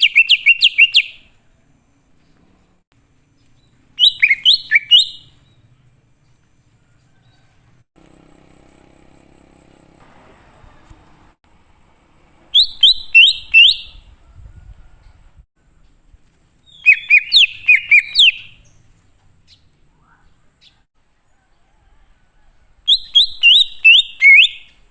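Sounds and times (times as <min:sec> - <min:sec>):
bird singing whistled notes: 0:00.0 - 0:02.4, 0:03.4 - 0:05.8, 0:12.5 - 0:15.2, 0:16.6 - 0:18.9, 0:22.8 - 0:24.9.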